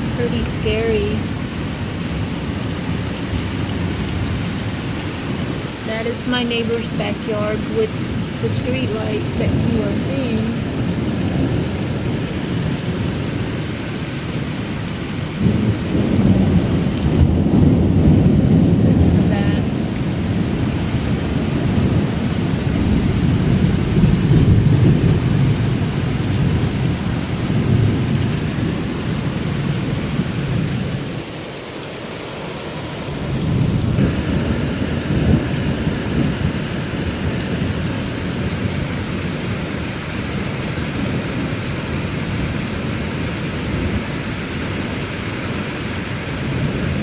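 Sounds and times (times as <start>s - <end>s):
steady rain: 0.0s - 47.0s
thunder rolling: 15.4s - 31.0s, 33.3s - 39.6s.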